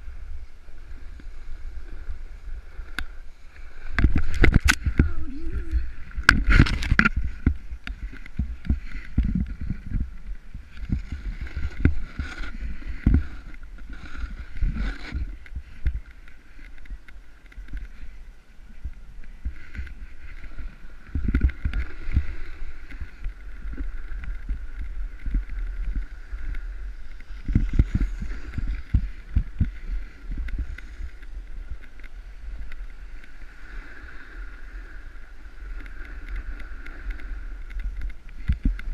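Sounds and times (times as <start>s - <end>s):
snowboard scraping over snow: 0.0s - 38.9s
wind on microphone: 0.0s - 38.9s
faint high hum: 4.6s - 6.6s.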